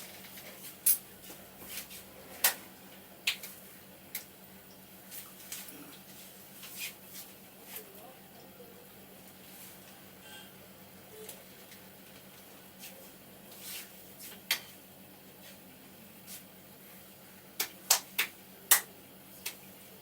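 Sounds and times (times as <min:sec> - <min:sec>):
sharp clicks from hands cracking: 0:17.6 - 0:19.6.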